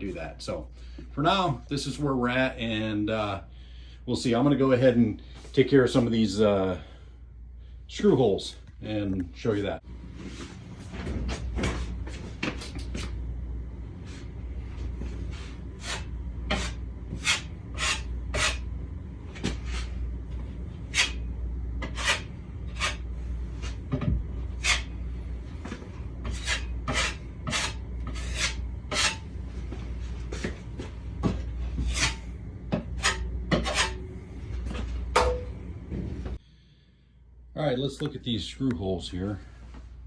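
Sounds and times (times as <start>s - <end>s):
steady low hum: 0.0s - 40.0s
drywall knife scraping: 15.2s - 18.7s, 20.8s - 29.3s, 31.5s - 34.0s.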